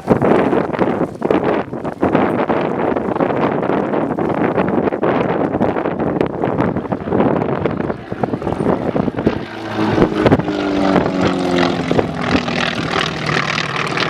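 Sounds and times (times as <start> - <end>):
wind buffeting microphone: 0.0 - 14.0
propeller airplane flying past: 5.5 - 14.0.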